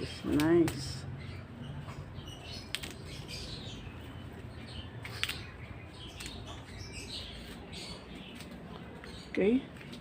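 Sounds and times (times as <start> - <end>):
small birds chirping: 0.0 - 10.0
sharp clicks: 2.6 - 3.1, 5.0 - 5.5.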